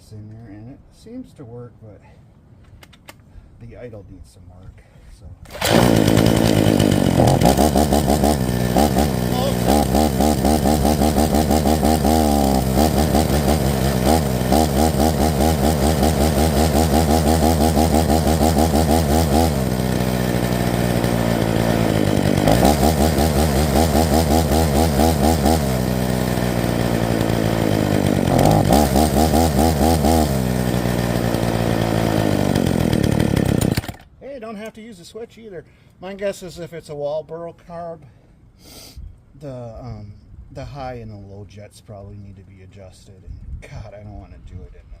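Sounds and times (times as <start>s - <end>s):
chainsaw engine running unevenly: 5.5s - 34.1s.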